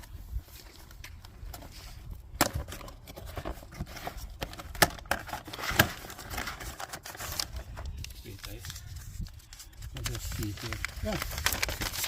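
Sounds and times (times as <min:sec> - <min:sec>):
packaging crinkling and rustling: 0:00.6 - 0:12.0.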